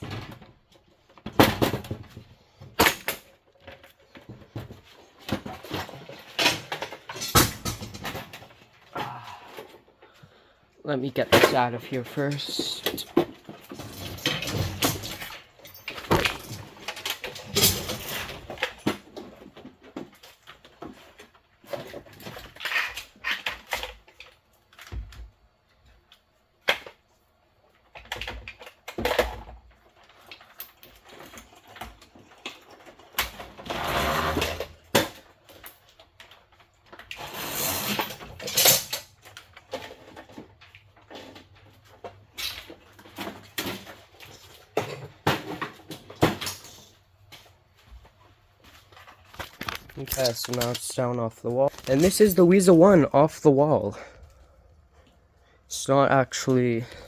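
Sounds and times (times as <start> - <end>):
knocks and clunks: 11.2 - 20.1.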